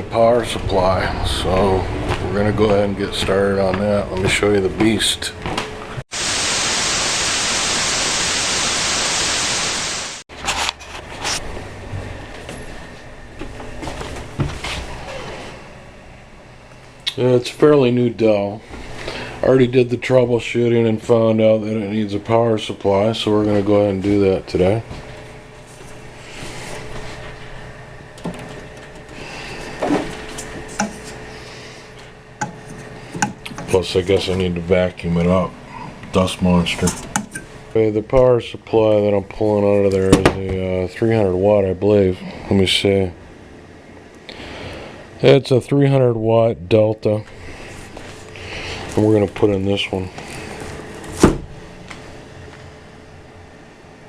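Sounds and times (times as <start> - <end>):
loud static hiss: 6.1 - 10.2
faint steady hum: 10.8 - 54.0.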